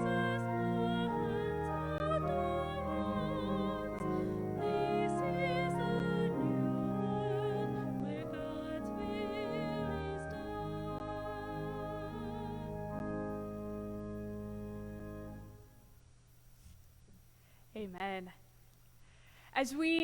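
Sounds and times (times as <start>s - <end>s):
slow church music: 0.0s - 16.0s.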